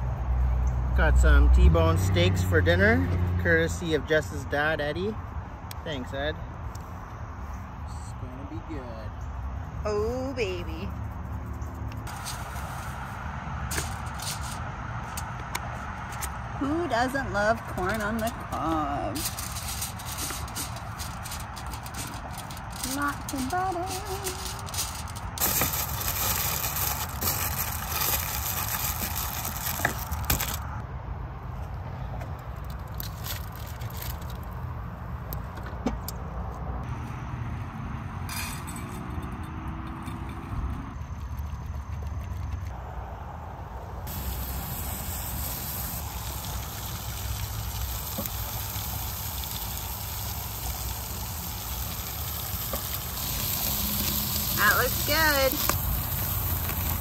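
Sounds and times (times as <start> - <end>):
food sizzling: 18.9 - 30.6, 44.1 - 57.0.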